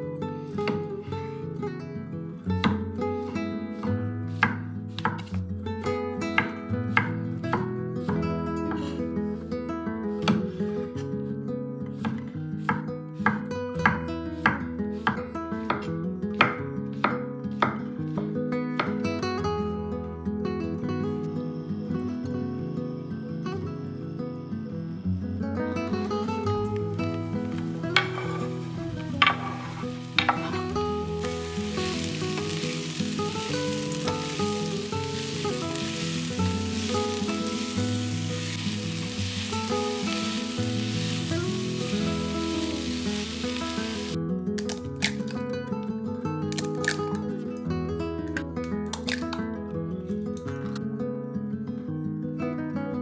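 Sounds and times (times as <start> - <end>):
acoustic guitar strumming: 0.0 - 53.0
food sizzling in oil: 26.7 - 44.2.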